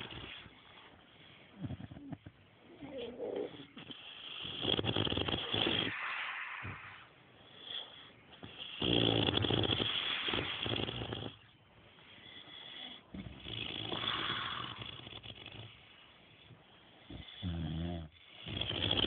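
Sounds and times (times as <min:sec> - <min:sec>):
quiet breathing: 0:00.0 - 0:19.0
person snoring: 0:08.6 - 0:11.4, 0:13.4 - 0:15.3.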